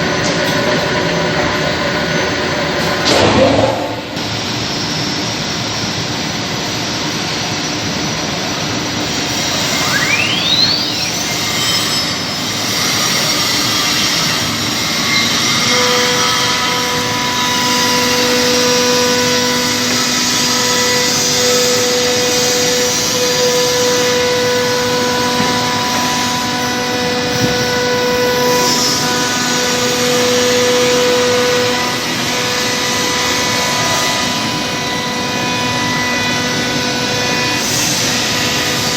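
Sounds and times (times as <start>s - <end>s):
steady humming tones: 0.0s - 38.9s
whine sweeping up in pitch: 2.1s - 4.9s, 9.5s - 11.8s, 15.8s - 36.5s
router machine rushing noise: 8.8s - 38.9s.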